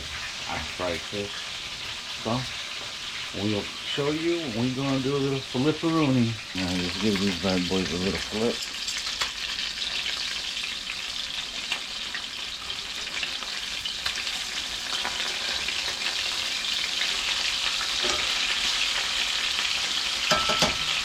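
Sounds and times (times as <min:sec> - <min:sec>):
fish sizzling in hot oil: 0:00.0 - 0:21.0
small crackling pops: 0:08.6 - 0:09.4.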